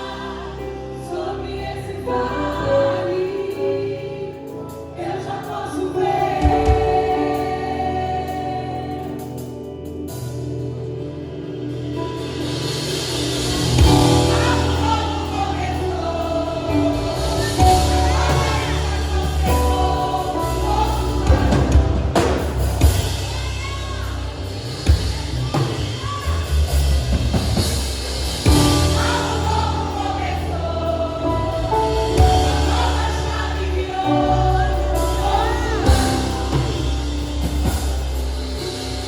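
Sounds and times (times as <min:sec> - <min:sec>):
bass guitar: 0:06.4 - 0:39.0
drum kit: 0:11.9 - 0:39.0.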